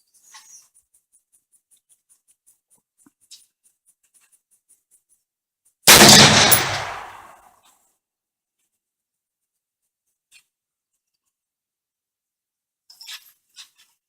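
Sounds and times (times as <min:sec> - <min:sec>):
rifle shot with echo: 0:05.9 - 0:07.3.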